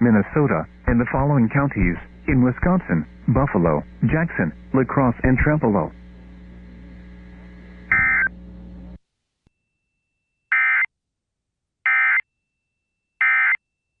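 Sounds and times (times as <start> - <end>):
radio hiss and hum: 0.0 - 9.0.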